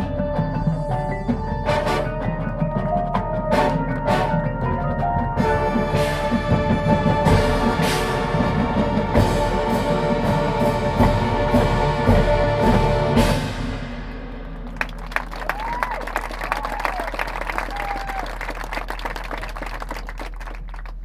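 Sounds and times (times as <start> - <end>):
timpani hits: 0.0 - 18.2
marching band brass chord: 1.5 - 15.4
audience applause: 14.0 - 21.0.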